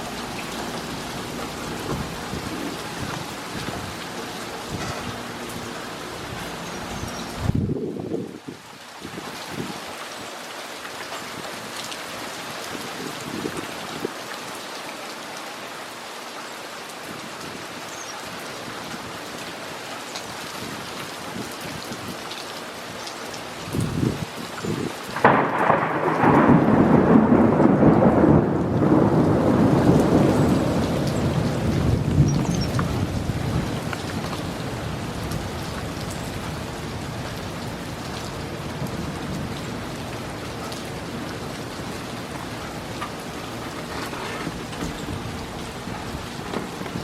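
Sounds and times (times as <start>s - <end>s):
thunder clap and rumble: 0.0s - 5.6s, 25.2s - 47.0s
rain hissing: 0.0s - 16.1s, 16.9s - 47.0s.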